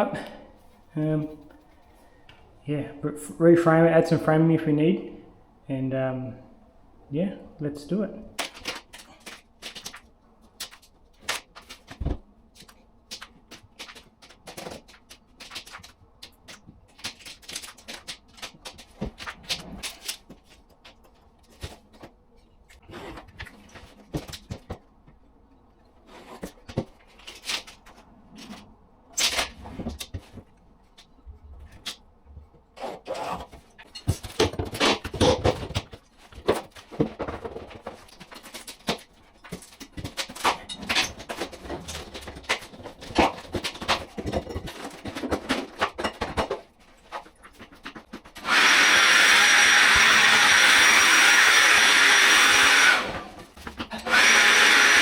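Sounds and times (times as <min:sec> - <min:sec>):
plasterboard being broken and pulled: 0:08.4 - 0:12.2, 0:32.8 - 0:48.4.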